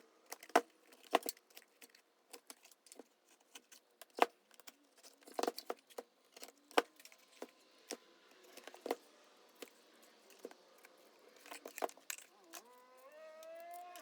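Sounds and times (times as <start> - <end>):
tools and parts clicking and clinking: 0.2 - 14.0.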